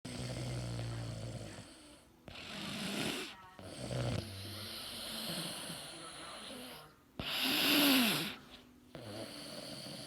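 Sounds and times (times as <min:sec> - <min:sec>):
rattling snore: 0:02.4 - 0:08.4, 0:09.0 - 0:10.0.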